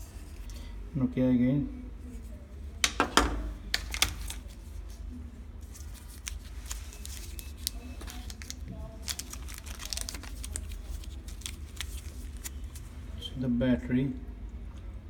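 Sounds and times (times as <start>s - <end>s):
packaging clicks and rustles: 3.2s - 4.6s, 5.7s - 12.9s.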